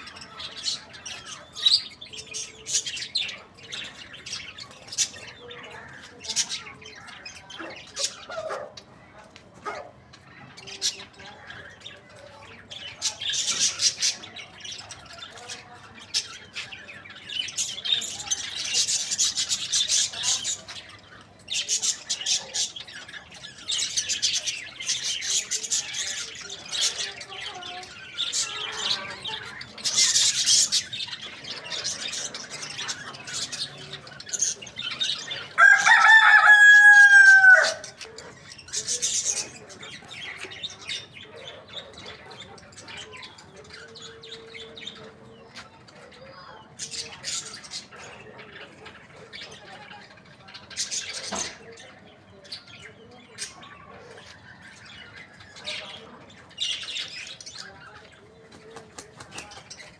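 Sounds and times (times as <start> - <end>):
small birds chirping: 0.0 - 59.9
rooster crowing: 35.6 - 37.9.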